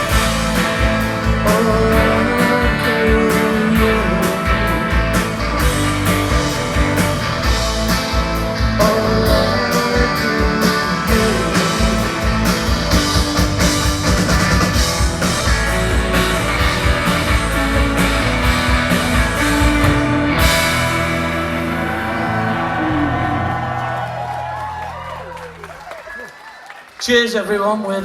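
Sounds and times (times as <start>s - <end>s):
live rock band playing: 0.0s - 26.2s
crowd cheering: 20.8s - 27.6s.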